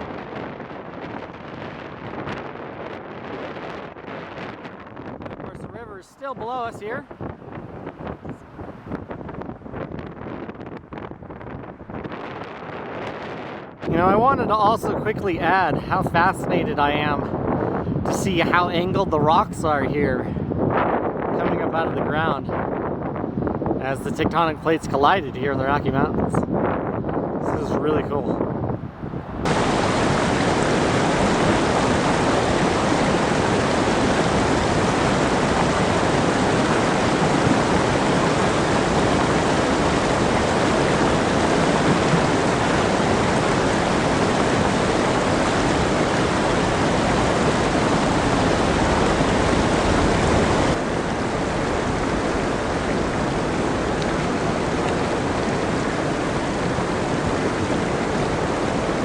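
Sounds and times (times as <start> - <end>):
whitewater rushing: 29.4 - 59.0.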